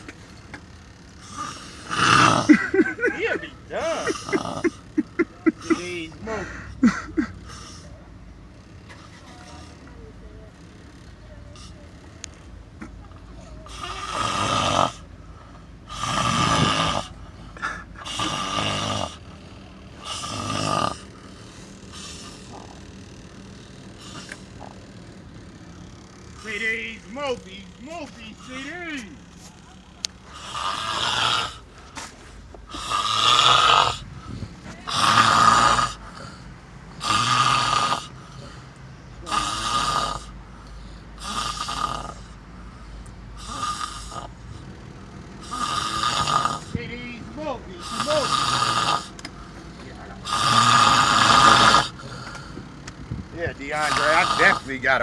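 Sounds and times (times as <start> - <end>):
person snoring: 1.2 - 7.9, 13.6 - 22.9, 23.5 - 24.6, 30.2 - 32.1, 32.7 - 42.4, 43.3 - 44.7, 45.4 - 46.8, 47.8 - 49.2, 50.2 - 52.6, 53.5 - 54.8.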